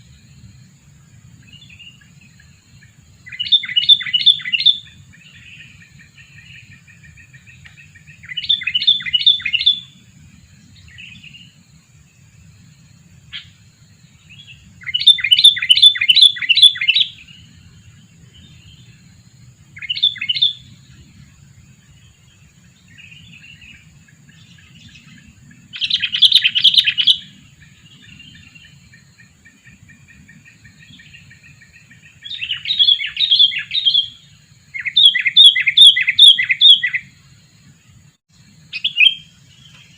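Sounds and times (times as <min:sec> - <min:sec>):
bird chattering calls: 0:25.7 - 0:27.4.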